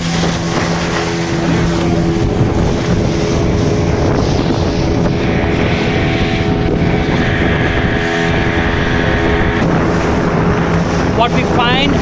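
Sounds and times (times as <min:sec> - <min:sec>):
motorboat engine running: 0:00.0 - 0:12.0
wind buffeting microphone: 0:00.0 - 0:12.0.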